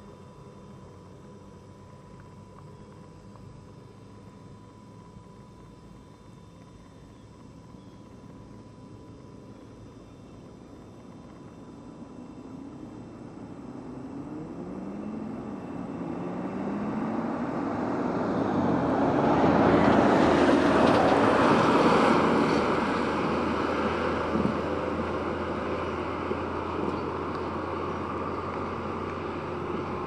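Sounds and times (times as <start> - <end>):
sports car engine accelerating: 13.0 - 30.0.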